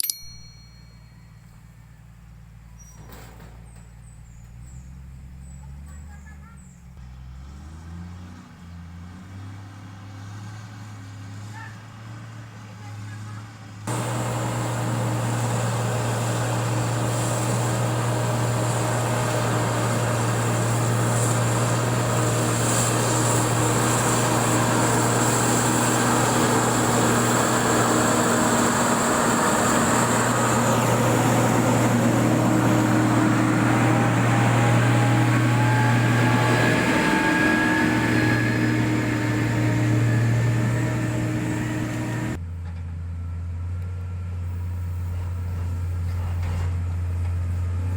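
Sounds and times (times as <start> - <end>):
faint rising whine: 13.9 - 42.4
diesel engine running under load: 13.9 - 47.9.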